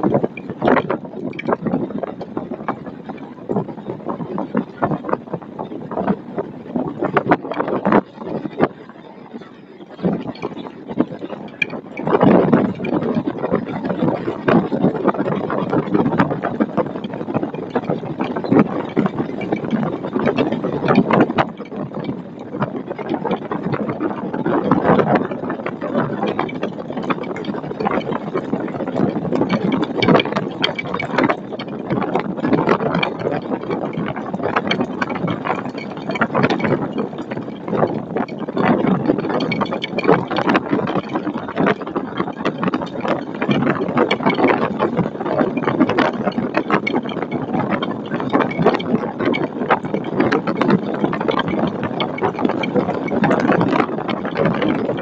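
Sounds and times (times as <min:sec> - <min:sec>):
storm wind buffeting microphone: 0:00.0 - 0:55.0
irregular knocks and clicks: 0:24.6 - 0:55.0.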